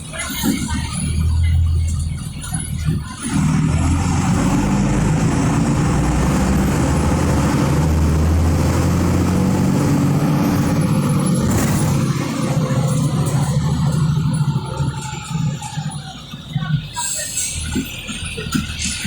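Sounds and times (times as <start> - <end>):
diesel bus engine under load: 0.0 - 19.0.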